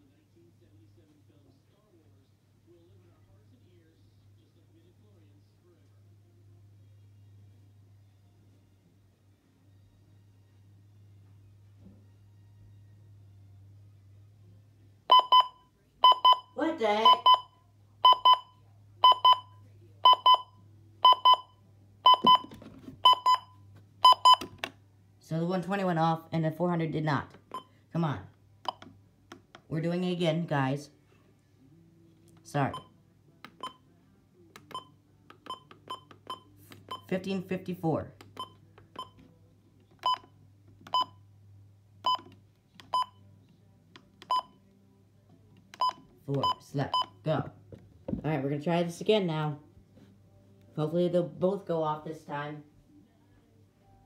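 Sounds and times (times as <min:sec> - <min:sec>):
radio alarm beeping: 0:15.1 - 0:17.5.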